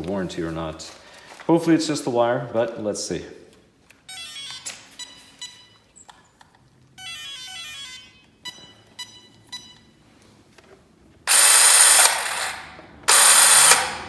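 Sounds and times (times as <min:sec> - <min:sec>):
brushless motor spinning up: 0:11.3 - 0:14.0
electronic beeps through motor: 0:13.1 - 0:14.0.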